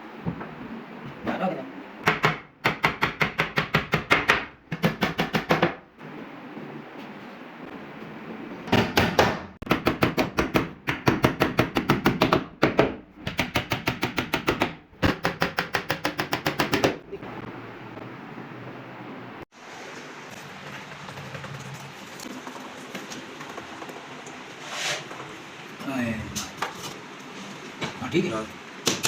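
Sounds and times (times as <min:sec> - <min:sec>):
rapid sharp knocks: 0:02.0 - 0:05.8, 0:08.7 - 0:17.0.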